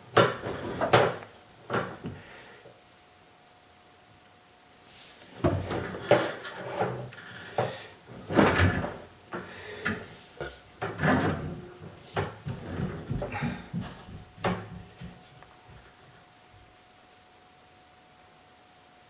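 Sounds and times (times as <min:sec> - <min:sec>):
irregular knocks and thumps: 0:10.8 - 0:15.8.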